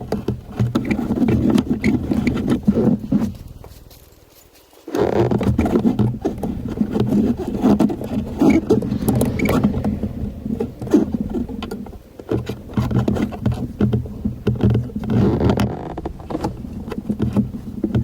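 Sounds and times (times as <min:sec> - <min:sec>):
clicks rattles and scraping by hand: 0:00.0 - 0:09.5, 0:11.1 - 0:18.0
steady low hum: 0:06.5 - 0:15.0.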